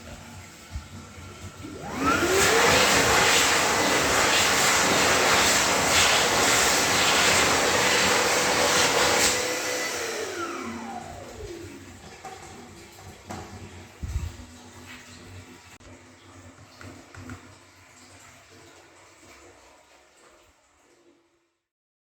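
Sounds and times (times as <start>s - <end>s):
electric hand dryer blowing: 0.0s - 14.6s.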